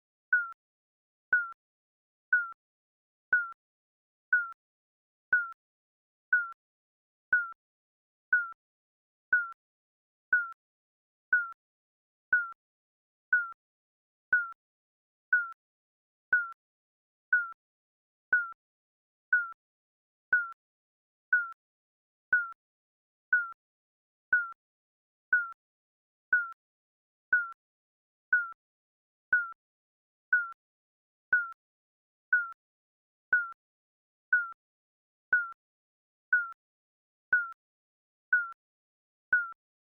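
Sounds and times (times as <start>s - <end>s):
countdown timer beeps: 0.3s - 0.6s, 1.3s - 1.6s, 2.3s - 2.6s, 3.3s - 3.6s, 4.3s - 4.6s, 5.3s - 5.6s, 6.3s - 6.6s, 7.3s - 7.6s, 8.3s - 8.6s, 9.3s - 9.6s, 10.3s - 10.6s, 11.3s - 11.6s, 13.3s - 13.6s, 17.3s - 17.6s, 18.3s - 18.6s, 19.3s - 19.6s, 23.3s - 23.6s, 25.3s - 25.6s, 26.3s - 26.6s, 28.3s - 28.6s, 29.3s - 29.6s, 30.3s - 30.6s, 31.3s - 31.6s, 33.3s - 33.6s, 34.3s - 34.6s, 35.3s - 35.6s, 38.3s - 38.6s, 39.3s - 39.6s.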